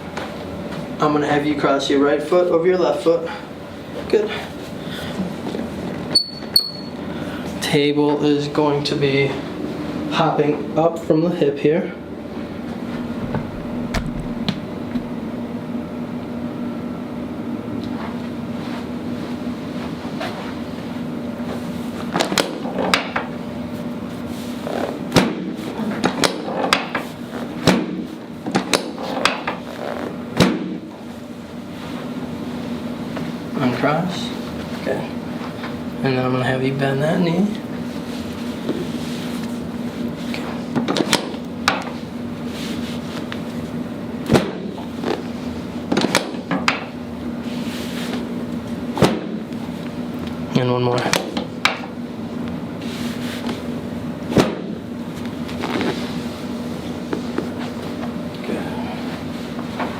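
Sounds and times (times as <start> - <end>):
steady low hum: 0.0 - 59.9
sharp clacks of chiropractic adjustment: 26.0 - 30.8.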